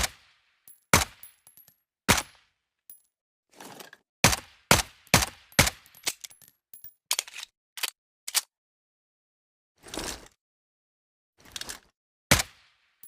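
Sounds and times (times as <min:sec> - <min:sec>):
light metallic clinks: 0:05.9 - 0:07.0.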